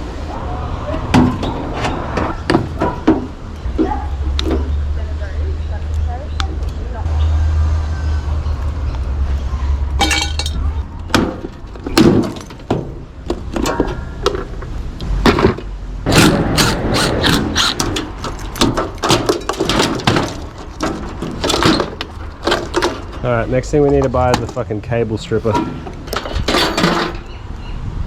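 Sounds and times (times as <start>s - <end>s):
metal and plastic knocks and cracks: 10.0s - 24.8s, 25.5s - 27.3s.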